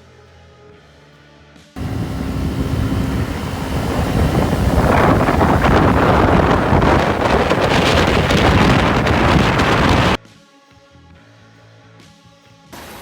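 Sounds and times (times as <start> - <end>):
wind buffeting microphone: 1.8 - 10.2.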